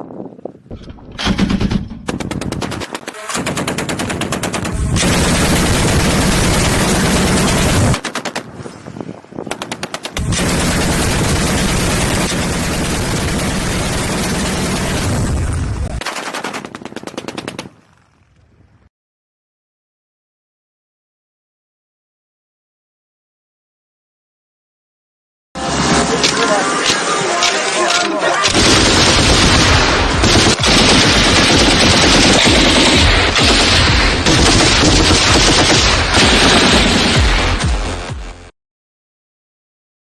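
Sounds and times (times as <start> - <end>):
heavy machine gun firing bursts: 1.2 - 8.5, 9.5 - 15.3, 28.5 - 37.6.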